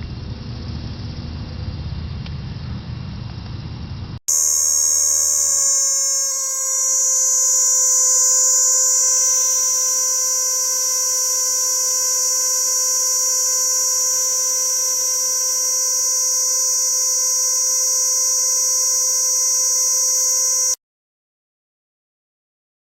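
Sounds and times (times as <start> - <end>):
cicada buzzing: 4.3 - 20.8.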